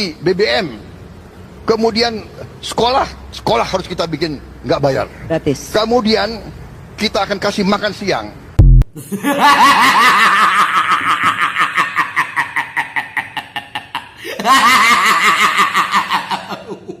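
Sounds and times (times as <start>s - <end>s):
person laughing hard: 9.0s - 17.0s.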